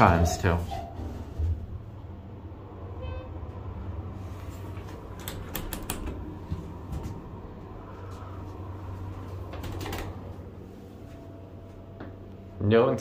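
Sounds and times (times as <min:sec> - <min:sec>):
steady low hum: 0:00.0 - 0:13.0
faint tone: 0:02.8 - 0:03.6
sharp clicks: 0:05.2 - 0:06.2.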